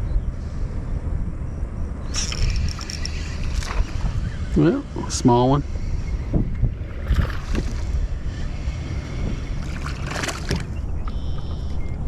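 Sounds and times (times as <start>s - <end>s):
wind rumble on microphone: 0.0s - 12.0s
water splashing around kayak: 6.8s - 11.4s.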